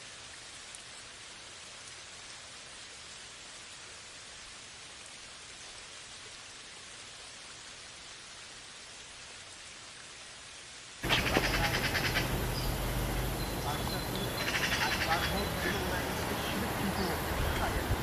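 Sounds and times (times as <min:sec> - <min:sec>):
steady rain: 0:00.0 - 0:18.0
low hum: 0:11.0 - 0:14.5.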